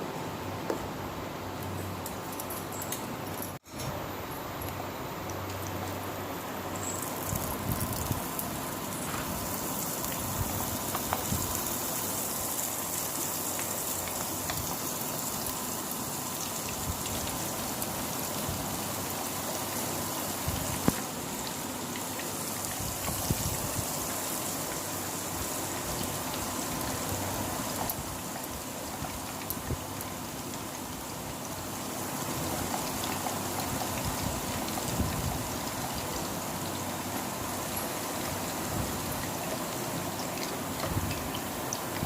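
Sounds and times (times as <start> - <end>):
batter frying in hot oil: 5.3 - 42.0.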